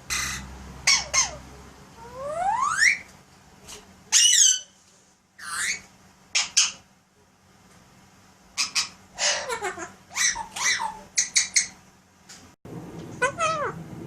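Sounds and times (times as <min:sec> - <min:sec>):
parrot squawking: 0:00.0 - 0:01.4, 0:02.0 - 0:03.1, 0:04.1 - 0:04.8, 0:05.4 - 0:06.9, 0:08.5 - 0:11.8, 0:13.2 - 0:13.8.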